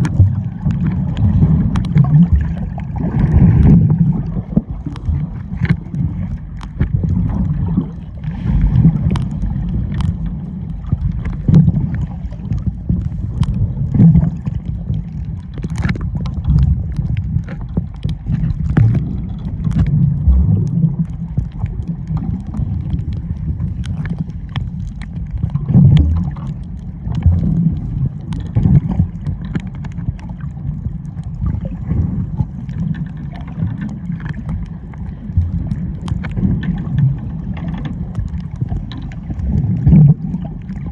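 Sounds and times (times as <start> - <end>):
muffled underwater sea wash: 0.0 - 40.9
small clicks and knocks: 9.0 - 20.0.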